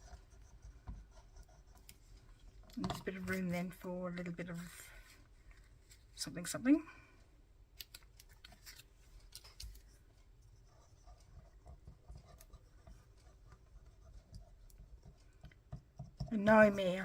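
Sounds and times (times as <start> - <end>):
paper rustling: 7.9 - 10.0.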